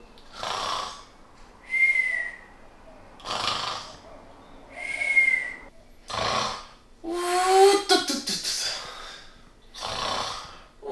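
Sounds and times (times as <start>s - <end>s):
person snoring with a whistle: 4.8s - 6.5s.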